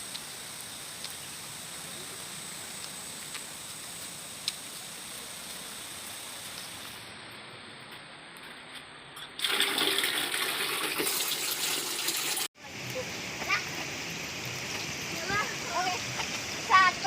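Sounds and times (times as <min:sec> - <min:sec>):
river water flowing: 0:09.4 - 0:17.0.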